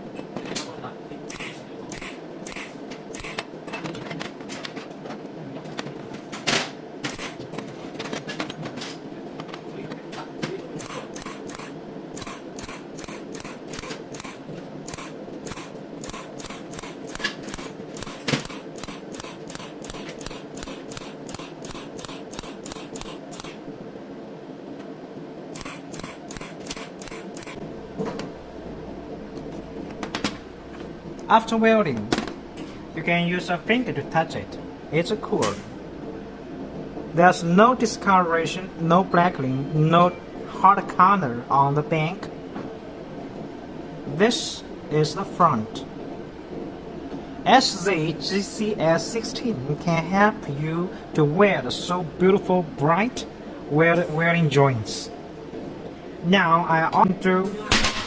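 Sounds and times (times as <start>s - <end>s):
steady hum: 0.0s - 58.0s
welding machine clicks: 1.3s - 3.5s, 10.8s - 23.6s, 25.6s - 27.6s.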